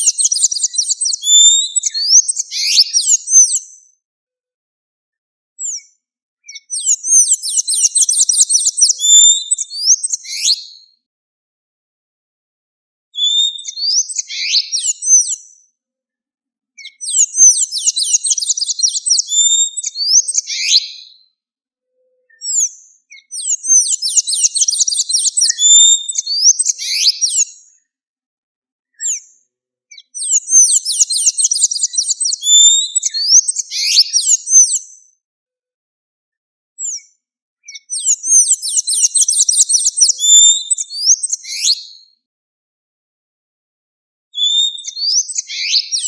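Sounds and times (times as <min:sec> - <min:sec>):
bird twittering song: 0:00.0 - 0:03.9, 0:05.6 - 0:10.9, 0:13.2 - 0:15.7, 0:16.8 - 0:21.3, 0:22.0 - 0:27.8, 0:28.9 - 0:35.1, 0:36.8 - 0:42.1, 0:44.4 - 0:46.0.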